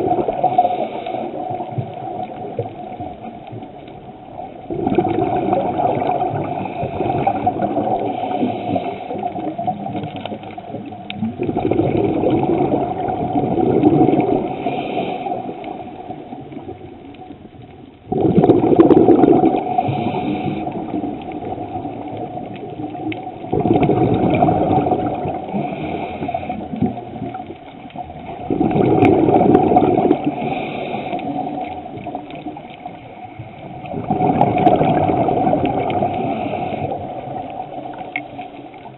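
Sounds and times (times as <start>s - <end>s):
exhaled bubbles rushing: 0.0s - 38.9s
water noise: 0.0s - 38.9s
diver breathing through regulator: 0.3s - 1.8s, 6.2s - 9.6s, 13.8s - 16.2s, 18.8s - 21.2s, 24.3s - 27.0s, 28.8s - 31.8s, 33.0s - 37.5s.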